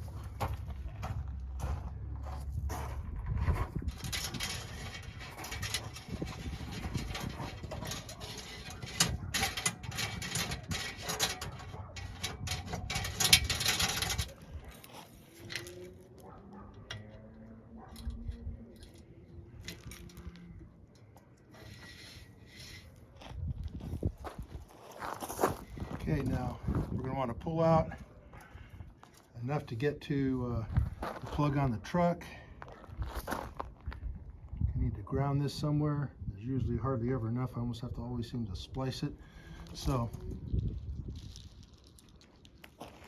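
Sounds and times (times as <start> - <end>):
handling noises: 0.0 - 27.1
wiring harness scraping and rustling: 0.0 - 29.3, 39.0 - 43.0.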